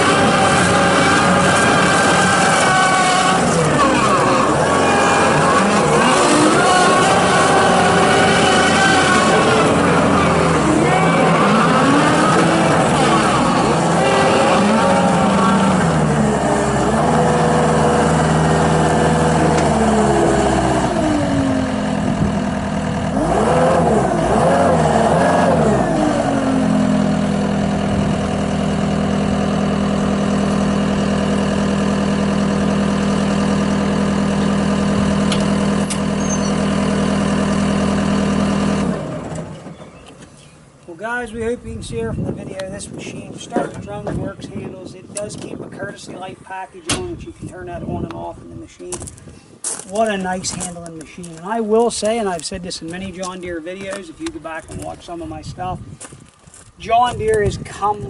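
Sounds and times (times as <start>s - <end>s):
loader diesel engine running: 0.0s - 42.4s.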